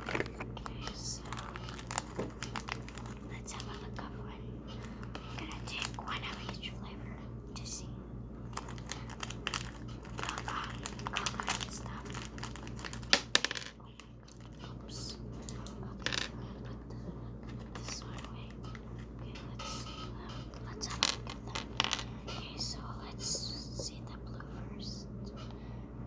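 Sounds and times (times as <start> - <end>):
plastic wrapper crinkling: 0.0 - 3.9, 8.5 - 13.4
low electrical hum: 0.0 - 26.0.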